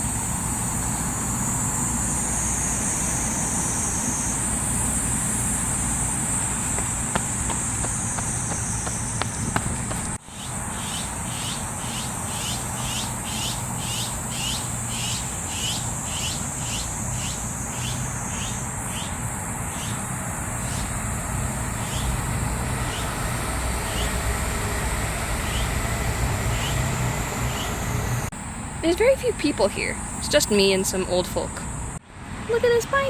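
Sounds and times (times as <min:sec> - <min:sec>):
insect high-pitched drone: 0:00.0 - 0:32.0
short rising insect chirps: 0:10.3 - 0:28.3.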